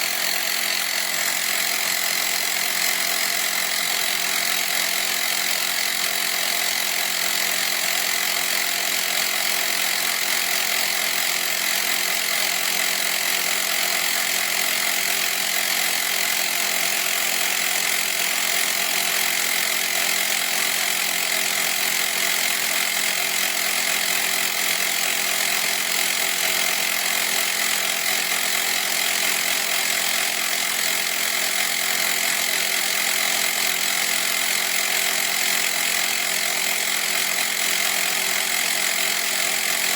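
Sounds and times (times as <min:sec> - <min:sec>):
tyre inflator compressor running: 0:00.0 - 0:39.9.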